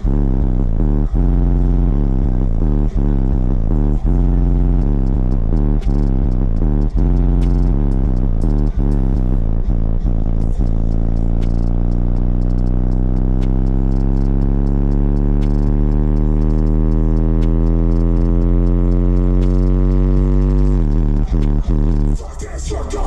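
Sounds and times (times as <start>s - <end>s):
loud rising bass drone: 0.0s - 23.0s.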